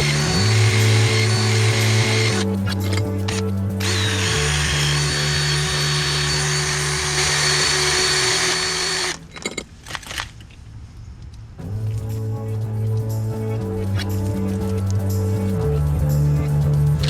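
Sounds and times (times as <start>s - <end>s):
handheld power tool running: 0.0s - 9.2s
background music: 0.0s - 9.7s, 11.6s - 17.0s.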